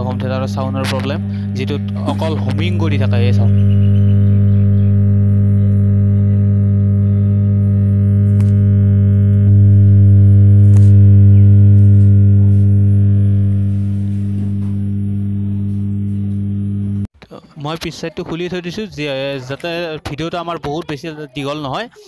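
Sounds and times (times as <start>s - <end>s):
higher tone: 0.0s - 17.1s
loud mains hum from speakers: 0.0s - 17.1s.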